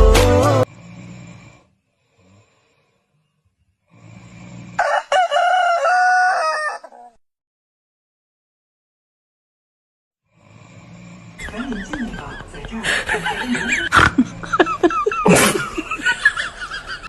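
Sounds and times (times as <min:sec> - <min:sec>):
rooster crowing: 0:04.8 - 0:07.2.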